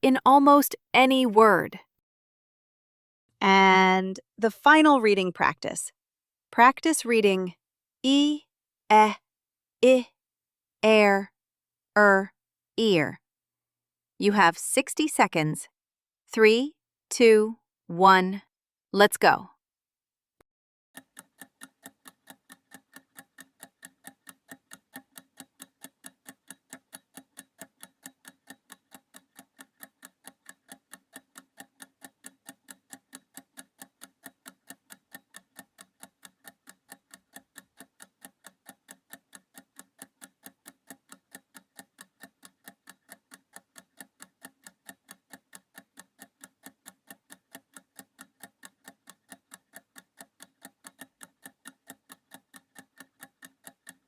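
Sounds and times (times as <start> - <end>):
clock ticking: 0.0 - 1.8, 14.2 - 15.6, 21.0 - 54.0.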